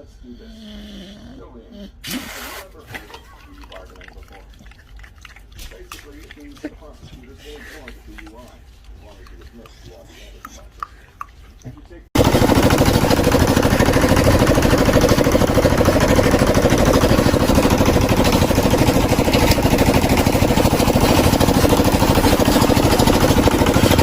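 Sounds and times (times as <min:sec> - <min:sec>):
motor running with fast pulsing: 0:12.2 - 0:24.0.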